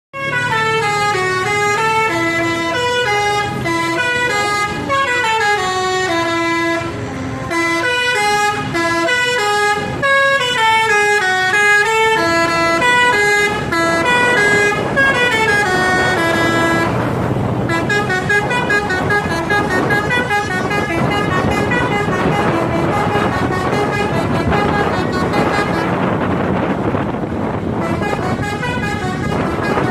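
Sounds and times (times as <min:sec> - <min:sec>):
multi-tone bus horn tune: 0:00.2 - 0:29.9
rushing noise: 0:11.4 - 0:29.9.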